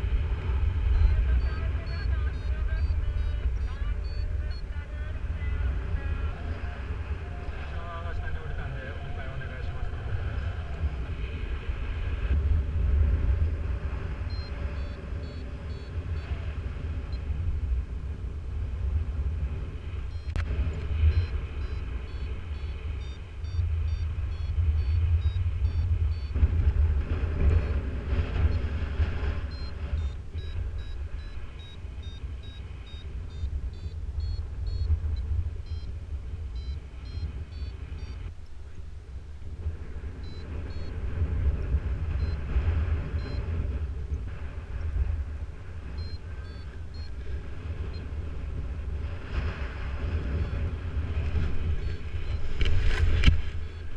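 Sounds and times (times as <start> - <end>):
variometer beeping: 0.0 - 6.6, 14.1 - 17.4, 20.0 - 26.6, 27.4 - 38.9, 40.2 - 44.2, 45.8 - 48.2, 50.3 - 53.9
wind buffeting microphone: 0.0 - 53.9.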